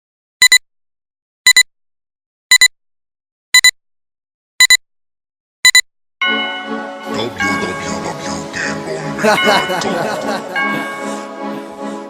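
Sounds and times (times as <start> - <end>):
electronic double beep: 1.5 - 1.7, 3.6 - 3.8, 4.6 - 4.8, 5.6 - 5.8.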